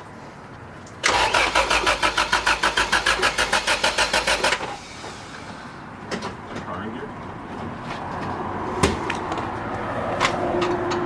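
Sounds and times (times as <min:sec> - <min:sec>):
car starter cranking: 0:01.0 - 0:05.3.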